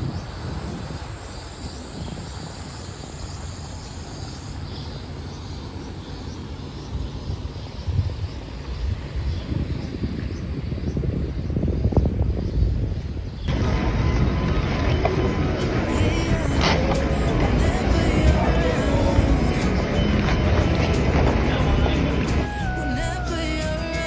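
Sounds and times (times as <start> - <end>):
low outdoor rumble: 12.8 - 24.0.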